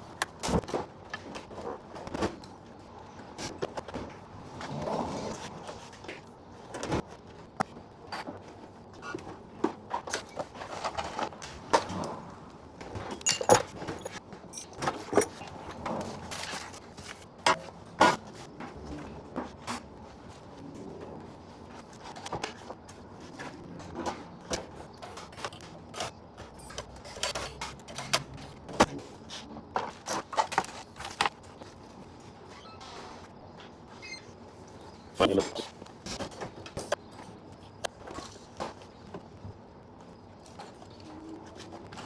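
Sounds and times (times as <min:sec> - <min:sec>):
tools clattering and knocking: 0:12.9 - 0:16.8, 0:36.1 - 0:37.4.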